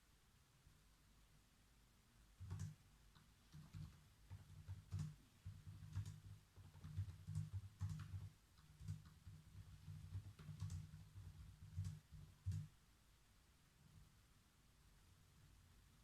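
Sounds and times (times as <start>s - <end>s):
computer keyboard typing: 2.4s - 12.7s.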